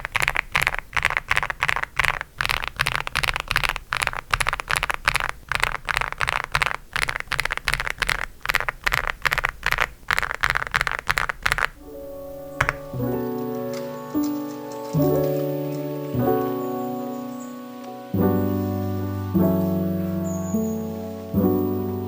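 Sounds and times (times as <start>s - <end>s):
mechanical keyboard key clacks: 0.0s - 11.8s, 12.4s - 13.0s.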